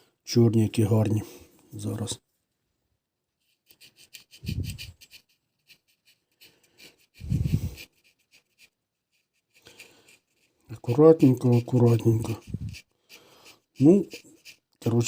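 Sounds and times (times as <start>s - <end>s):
scraping on graphite discs: 3.4s - 15.0s.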